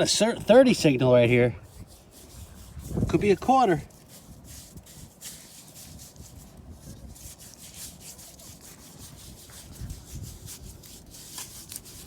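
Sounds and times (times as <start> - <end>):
digging in sand: 0.0 - 12.0.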